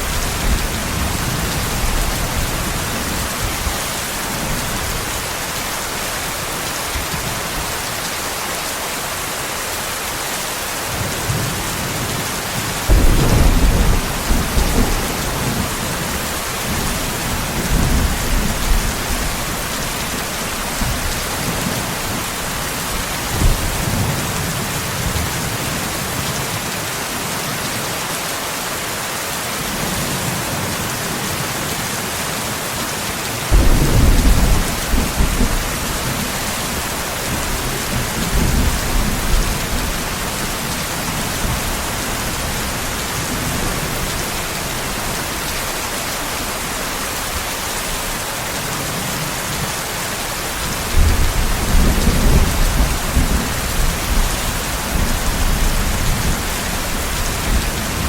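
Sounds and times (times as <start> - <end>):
steady rain: 0.0 - 58.0
thunder rumbling: 12.9 - 24.7, 33.5 - 45.2.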